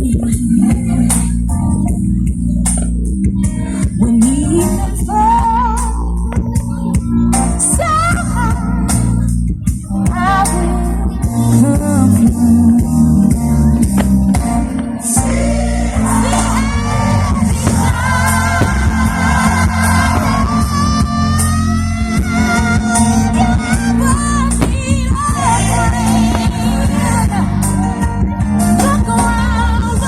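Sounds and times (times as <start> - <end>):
strong steady bass: 11.6 - 29.4.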